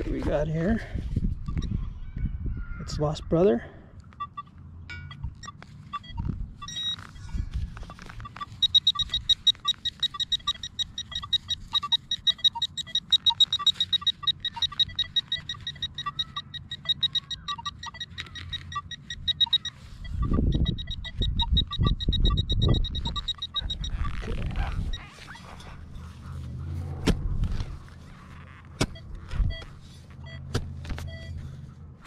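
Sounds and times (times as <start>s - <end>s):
pinpointer beeping rapidly: 4.2s - 4.5s, 5.1s - 25.6s, 28.9s - 30.5s
short lower beeps: 4.2s - 25.1s.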